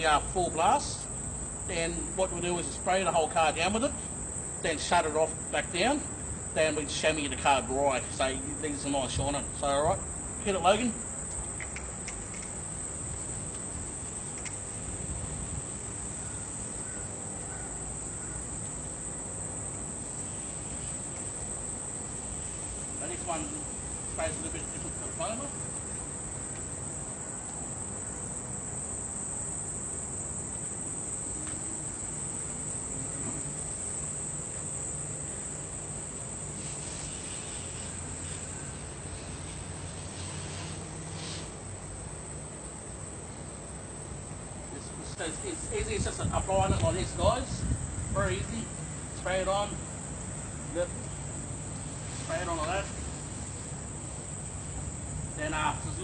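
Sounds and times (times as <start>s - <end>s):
background hiss: 0.0s - 56.0s
high-pitched insect chorus: 0.0s - 56.0s
hose sprayer hissing: 19.9s - 25.6s, 36.3s - 41.6s, 51.8s - 53.7s.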